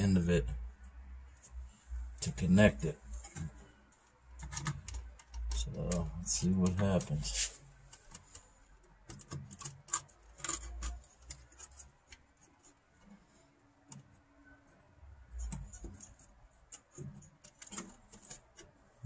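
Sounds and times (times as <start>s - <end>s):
clicks and light metal taps: 3.1s - 14.6s.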